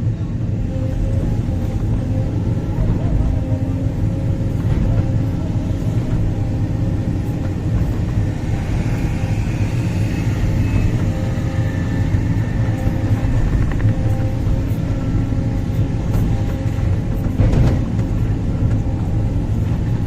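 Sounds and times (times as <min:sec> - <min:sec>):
excavator diesel engine rumble: 0:00.0 - 0:20.0
faint high whine: 0:07.4 - 0:15.4.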